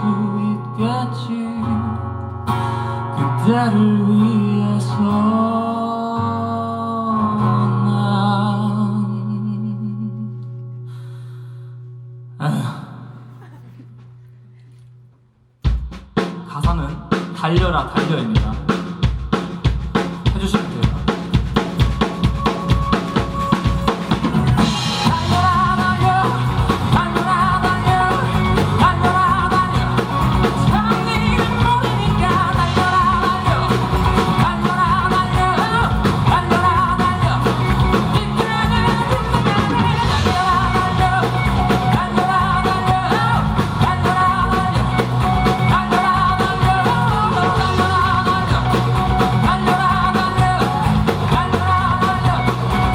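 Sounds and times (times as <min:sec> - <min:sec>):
drum kit beat: 0:15.6 - 0:52.9
live rock band playing: 0:15.6 - 0:52.9.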